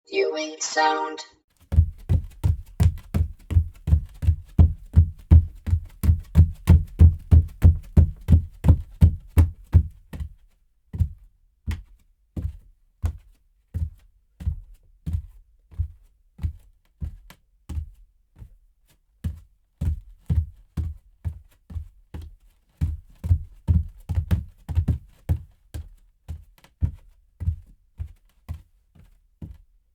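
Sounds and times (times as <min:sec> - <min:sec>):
bare footsteps on hard floor: 0:01.8 - 0:10.3.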